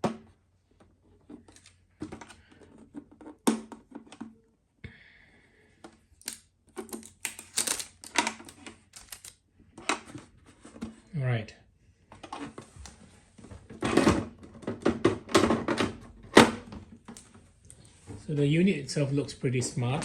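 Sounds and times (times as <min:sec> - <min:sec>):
plastic rustling: 0:06.8 - 0:09.4.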